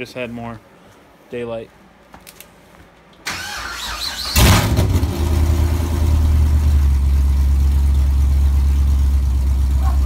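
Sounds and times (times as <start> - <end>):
car engine starting: 3.3 - 10.0
deep engine idle: 5.1 - 10.0.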